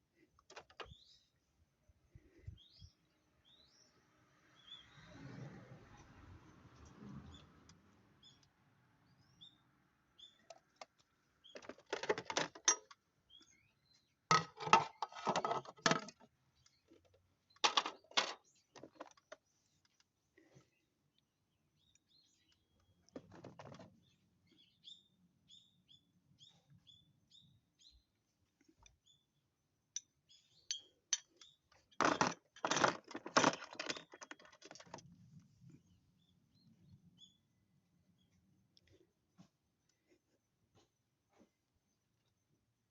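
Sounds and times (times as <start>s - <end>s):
small birds chirping faintly: 0.0s - 14.3s, 14.9s - 32.6s, 33.4s - 42.9s
metal tools clinking and rattling: 11.6s - 13.0s, 17.6s - 19.2s, 31.1s - 35.0s.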